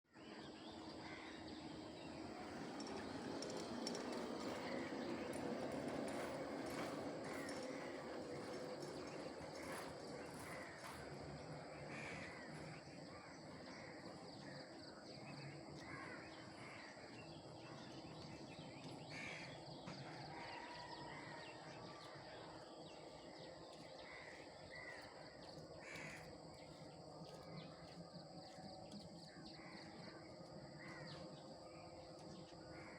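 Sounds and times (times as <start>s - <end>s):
faint bird calls: 23.7s - 27.8s.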